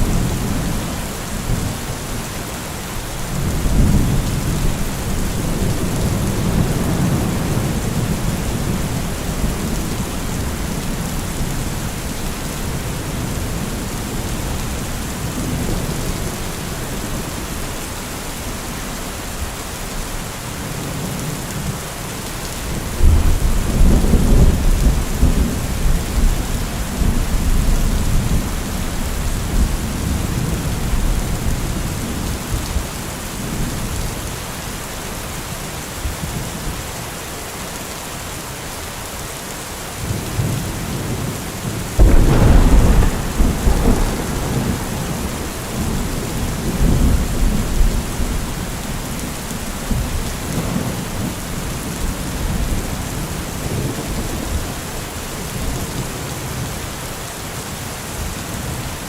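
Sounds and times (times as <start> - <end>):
heavy rain hissing: 36.6 - 59.0
deep rolling rumbles: 42.0 - 47.2.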